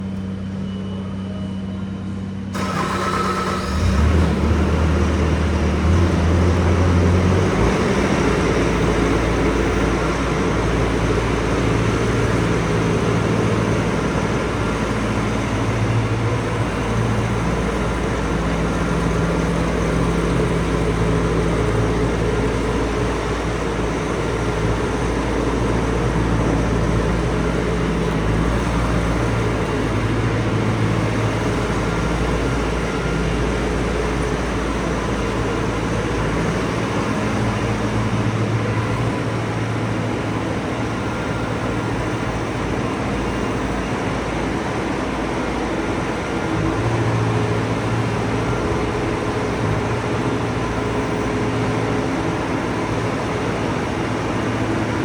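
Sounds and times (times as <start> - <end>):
diesel engine running: 2.5 - 55.0.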